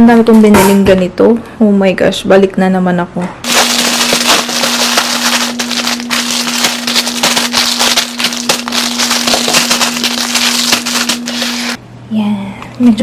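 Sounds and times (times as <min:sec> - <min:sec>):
plastic packets crinkling: 0:03.4 - 0:11.8.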